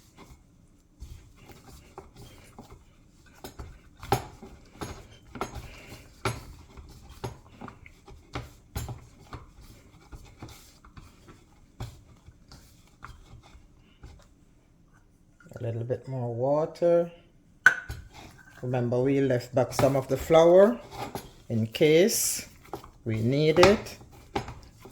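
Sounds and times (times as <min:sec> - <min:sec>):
hands kneading dough: 0:00.0 - 0:15.4, 0:17.8 - 0:24.9
knocks against bowl: 0:17.6 - 0:18.0.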